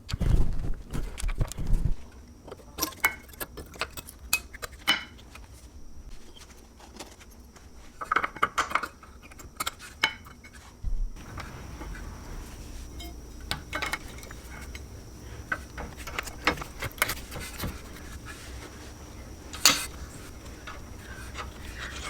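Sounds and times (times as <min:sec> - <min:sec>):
metal tools clinking: 0:11.2 - 0:22.0.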